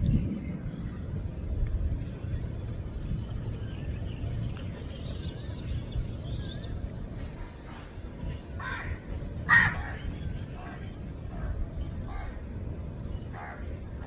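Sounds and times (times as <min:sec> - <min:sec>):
low background rumble: 0:00.0 - 0:14.0
small birds chirping: 0:00.8 - 0:14.0
crow cawing: 0:08.6 - 0:10.8.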